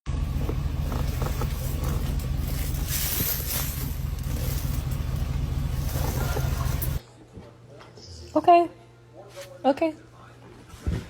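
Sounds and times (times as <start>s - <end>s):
low rumble: 0.1s - 7.0s.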